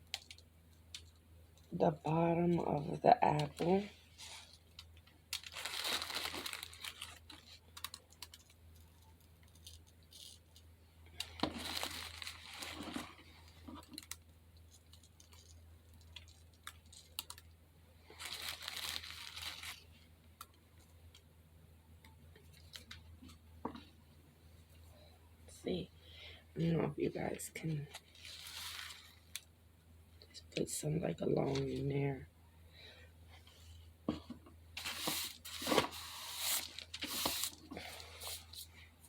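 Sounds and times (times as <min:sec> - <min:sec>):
craft material rustling and tearing: 0:04.2 - 0:08.6, 0:11.2 - 0:17.4, 0:18.1 - 0:19.9, 0:27.9 - 0:29.4, 0:34.8 - 0:38.7.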